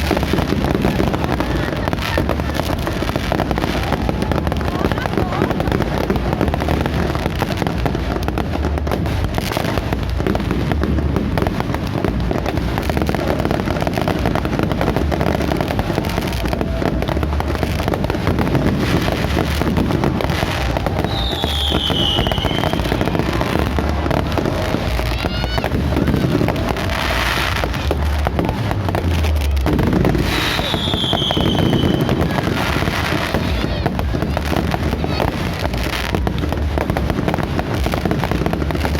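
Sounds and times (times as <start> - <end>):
fireworks crackling: 0.0 - 38.9
fireworks low booms: 0.0 - 38.9
falling firework whistles: 18.6 - 27.8, 30.0 - 33.8.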